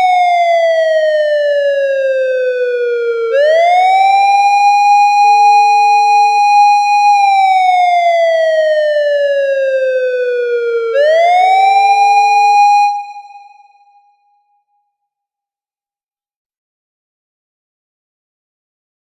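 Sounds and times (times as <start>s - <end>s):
police siren wailing: 0.0s - 13.9s.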